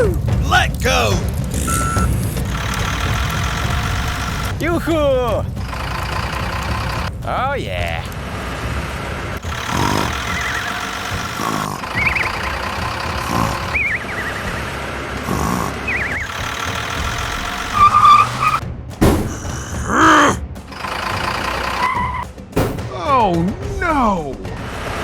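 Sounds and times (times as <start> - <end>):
cartoon truck engine rumble: 1.2 - 22.3
short warbling tones: 9.4 - 18.6, 20.7 - 22.2.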